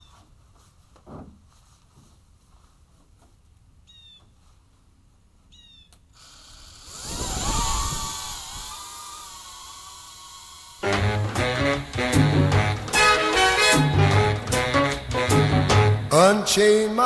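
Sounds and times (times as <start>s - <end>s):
drone motors whining: 6.2s - 14.3s.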